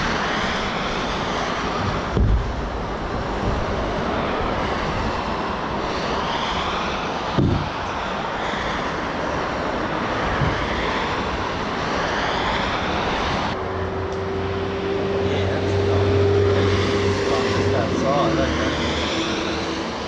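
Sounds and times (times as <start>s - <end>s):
knocks: 1.8s - 2.6s, 7.4s - 7.7s.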